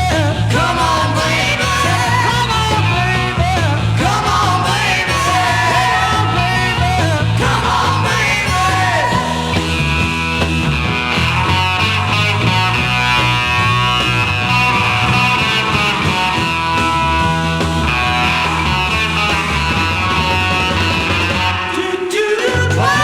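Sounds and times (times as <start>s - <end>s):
garage rock band instrumental: 0.0s - 23.0s.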